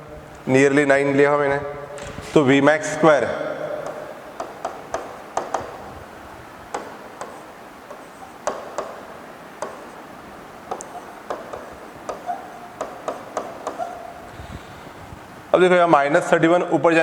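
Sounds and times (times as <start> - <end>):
faint steady background noise: 0.0 - 17.0
short sharp taps and clicks: 6.7 - 14.1.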